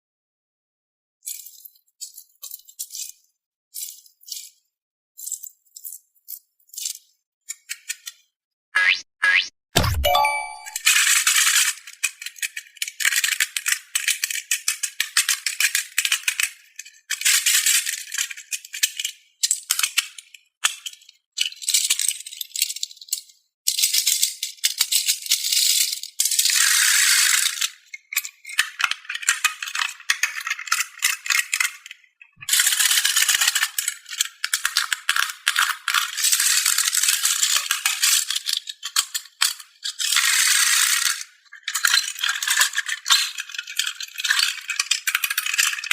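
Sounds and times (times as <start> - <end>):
plastic balls clattering: 28.3 - 45.9.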